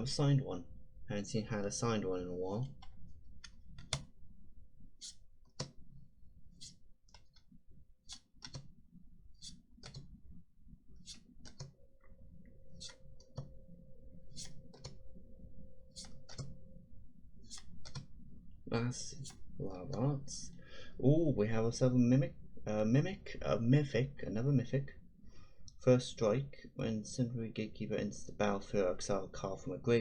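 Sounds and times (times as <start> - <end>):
cards flipped clicking: 8.1 - 8.7, 11.0 - 11.7, 16.0 - 16.6.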